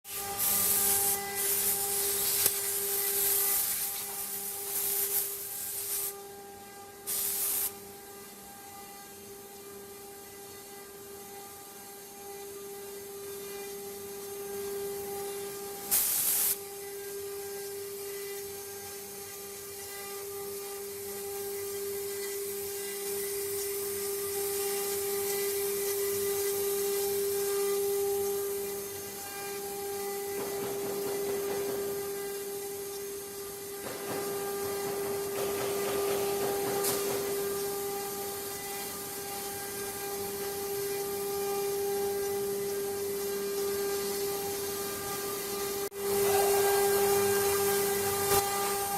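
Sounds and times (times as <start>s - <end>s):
short hiss bursts: 0.2s - 6.2s, 7.1s - 7.7s, 15.9s - 16.6s.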